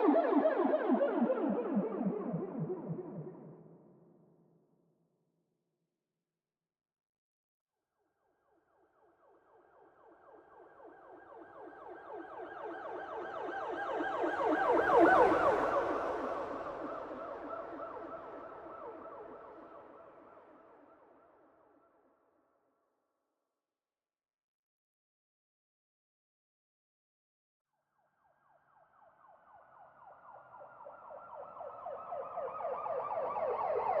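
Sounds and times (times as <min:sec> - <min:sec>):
police siren yelp: 0:28.8 - 0:34.0.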